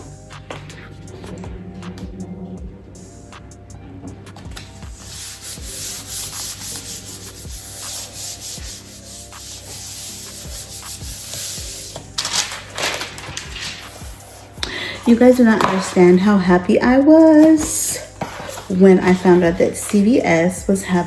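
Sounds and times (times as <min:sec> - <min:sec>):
paper rubbing on poster board: 0:04.5 - 0:16.4, 0:17.3 - 0:20.4.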